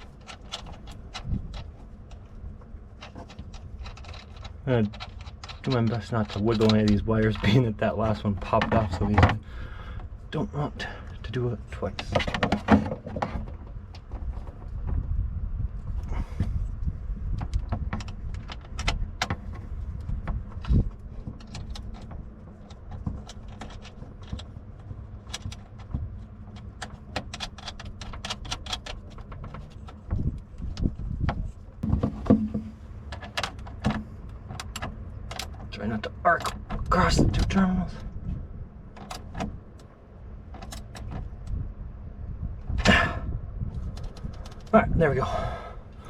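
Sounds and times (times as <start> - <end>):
metal hardware clicking and clinking: 0.0 - 2.4, 3.0 - 9.4, 17.4 - 30.9
handling rumble: 0.0 - 46.0.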